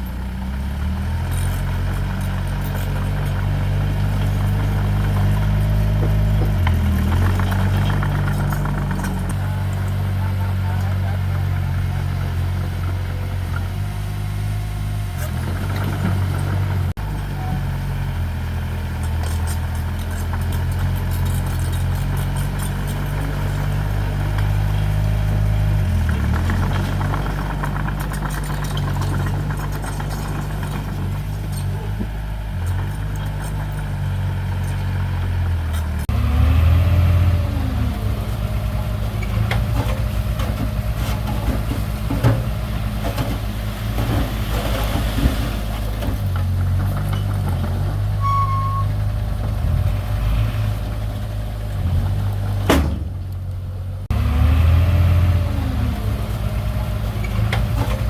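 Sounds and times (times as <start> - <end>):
heavy machinery engine running: 0.0 - 58.0
knocks and clanks: 25.9 - 34.9, 38.9 - 48.2, 51.8 - 53.5.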